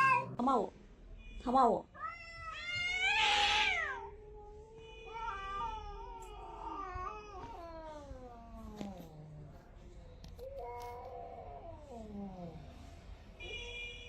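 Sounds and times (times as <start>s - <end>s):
cat yowling: 0.0s - 0.4s, 2.0s - 9.1s.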